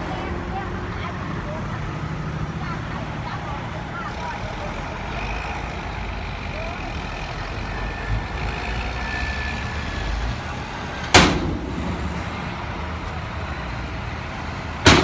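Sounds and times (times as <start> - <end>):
construction machinery engines: 0.0 - 15.0
loud sharp bang: 11.1 - 13.8.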